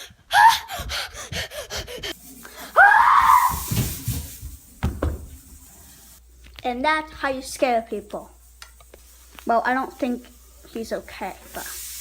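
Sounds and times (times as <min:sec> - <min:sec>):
person screaming in fright: 0:02.8 - 0:03.6.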